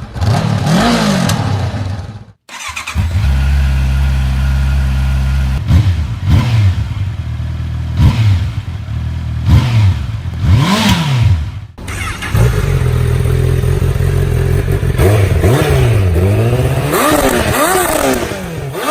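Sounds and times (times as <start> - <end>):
motorcycle engine revving: 0.0 - 18.9
motorcycle idling: 2.7 - 10.4, 11.8 - 18.8.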